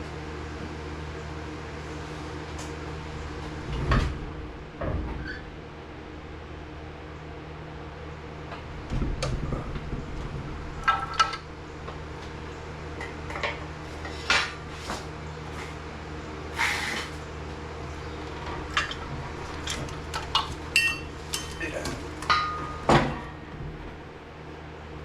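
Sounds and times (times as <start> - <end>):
steady low hum: 0.0 - 25.0
metal tools clanking: 19.6 - 23.0.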